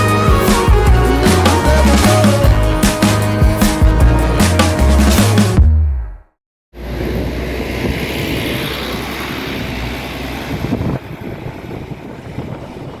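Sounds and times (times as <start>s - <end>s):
road noise: 6.7s - 13.0s
bus engine rumble: 6.8s - 13.0s.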